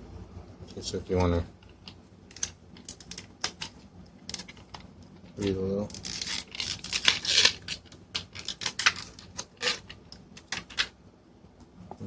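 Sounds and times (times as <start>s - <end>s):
package clicks and rustles: 1.7s - 11.0s.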